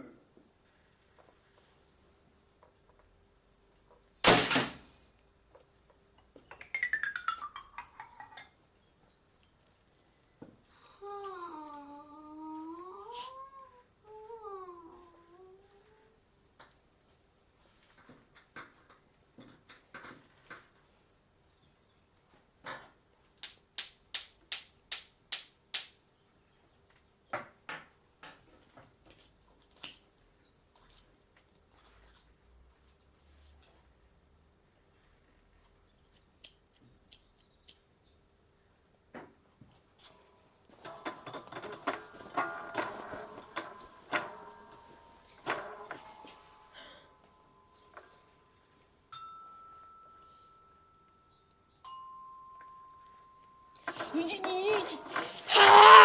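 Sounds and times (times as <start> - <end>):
loud crash with clinking ring: 4.2 - 5.1.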